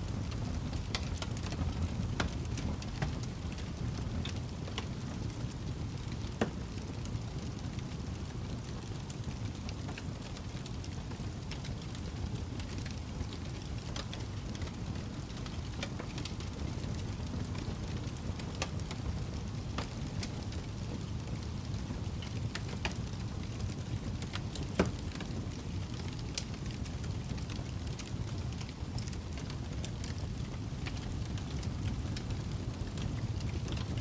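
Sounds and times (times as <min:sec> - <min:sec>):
fire crackles and pops: 0:00.0 - 0:34.0
fire flames rumbling: 0:00.0 - 0:34.0.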